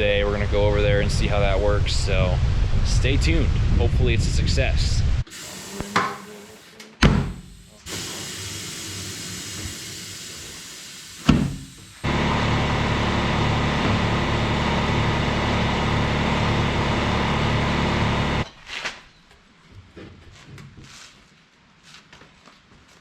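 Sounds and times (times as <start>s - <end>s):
tire changer motor running: 5.3s - 6.7s, 7.3s - 18.4s
air hiss: 5.3s - 12.1s.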